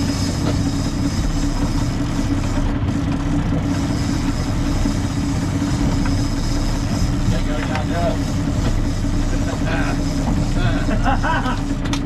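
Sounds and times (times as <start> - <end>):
boat engine running: 0.0 - 12.0
constant rushing noise: 0.0 - 12.0.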